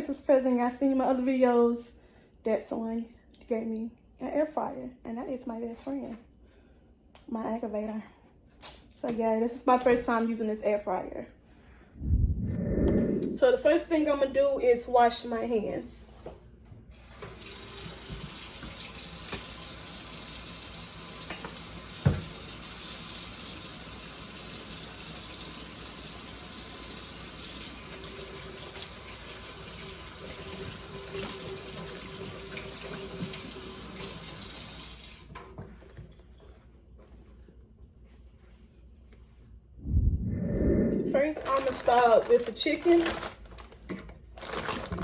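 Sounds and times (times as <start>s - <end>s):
tap running into sink: 17.2s - 19.6s, 21.2s - 22.6s.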